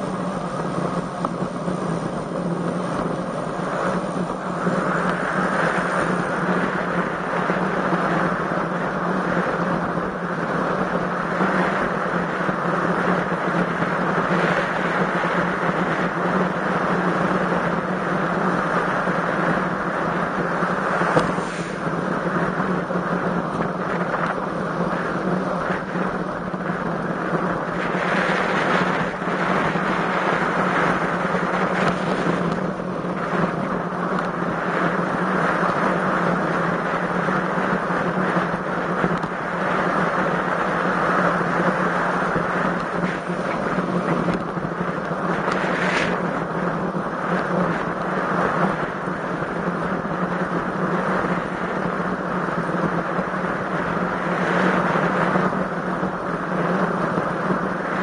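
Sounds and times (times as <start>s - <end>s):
constant low hum: 0.0s - 58.0s
wind rushing over microphone: 0.0s - 58.0s.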